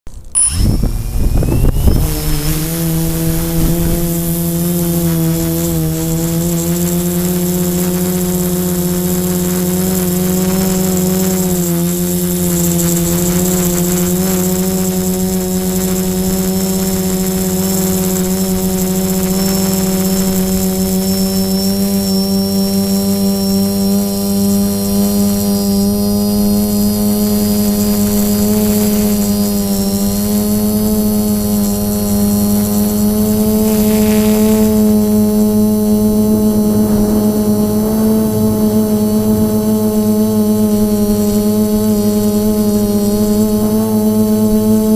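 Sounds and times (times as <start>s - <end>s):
quadcopter propellers buzzing: 0.0s - 44.9s.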